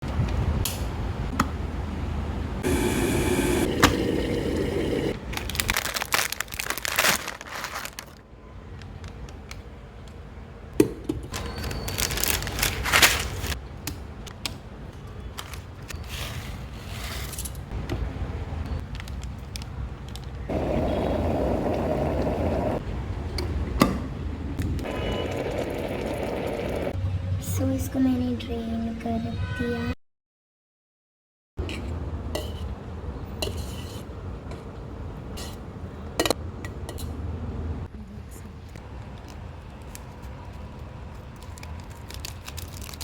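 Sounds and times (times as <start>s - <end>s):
plastic packaging crinkling and tearing: 5.2s - 8.2s, 11.4s - 13.6s, 39.2s - 43.0s.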